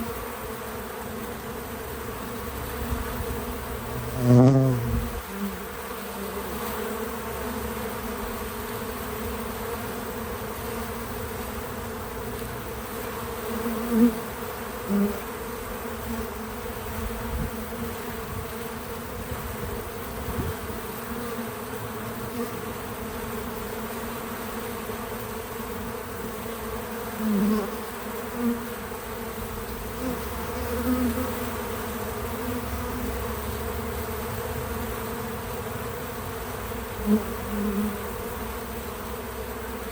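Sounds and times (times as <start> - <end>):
bees buzzing: 0.0 - 39.9.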